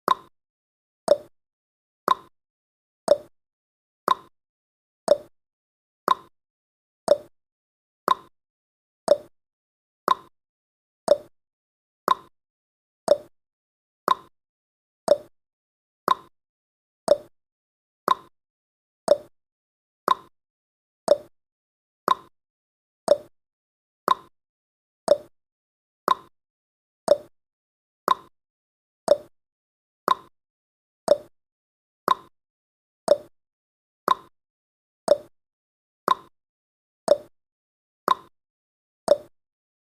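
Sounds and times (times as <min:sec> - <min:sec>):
clock-like timer ticking: 0:00.1 - 0:00.3, 0:01.1 - 0:01.3, 0:02.1 - 0:02.3, 0:03.1 - 0:03.3, 0:04.1 - 0:04.3, 0:05.1 - 0:05.3, 0:06.1 - 0:06.3, 0:07.1 - 0:07.3, 0:08.1 - 0:08.3, 0:09.1 - 0:09.3, 0:10.1 - 0:10.3, 0:11.1 - 0:11.3, 0:12.1 - 0:12.3, 0:13.1 - 0:13.3, 0:14.1 - 0:14.3, 0:15.1 - 0:15.3, 0:16.1 - 0:16.3, 0:17.1 - 0:17.3, 0:18.1 - 0:18.3, 0:19.1 - 0:19.3, 0:20.1 - 0:20.3, 0:21.1 - 0:21.3, 0:22.1 - 0:22.3, 0:23.1 - 0:23.3, 0:24.1 - 0:24.3, 0:25.1 - 0:25.3, 0:26.1 - 0:26.3, 0:27.1 - 0:27.3, 0:28.1 - 0:28.3, 0:29.1 - 0:29.3, 0:30.1 - 0:30.3, 0:31.1 - 0:31.3, 0:32.1 - 0:32.3, 0:33.1 - 0:33.3, 0:34.1 - 0:34.3, 0:35.1 - 0:35.3, 0:36.1 - 0:36.3, 0:37.1 - 0:37.3, 0:38.1 - 0:38.3, 0:39.1 - 0:39.3.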